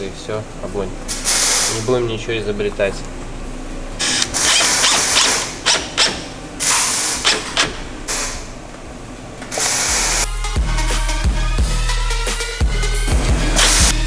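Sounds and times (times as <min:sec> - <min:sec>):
scraping and clicking on engine parts: 0:04.0 - 0:08.8
sharp knocks: 0:04.2 - 0:06.4, 0:07.2 - 0:08.0
music with drum beat: 0:10.3 - 0:14.0.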